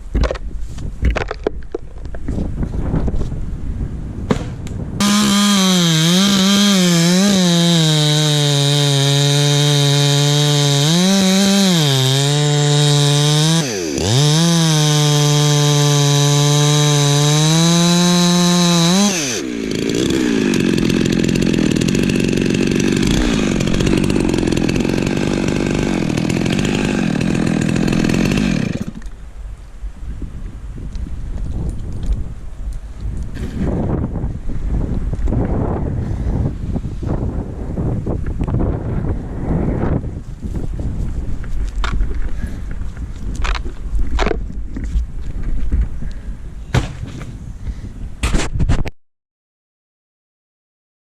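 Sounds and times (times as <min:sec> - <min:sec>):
chainsaw revving: 0:05.0 - 0:29.0.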